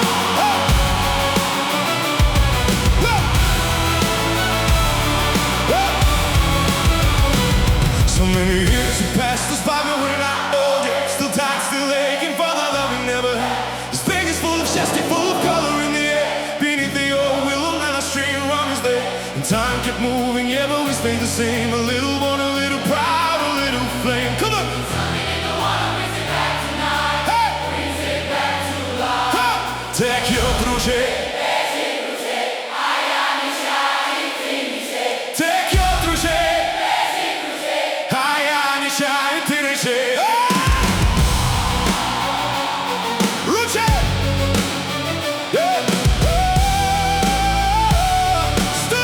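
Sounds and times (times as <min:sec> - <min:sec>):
stepping bass line: 0:00.0 - 0:09.6, 0:40.7 - 0:49.0
choir-like singing: 0:00.0 - 0:49.0.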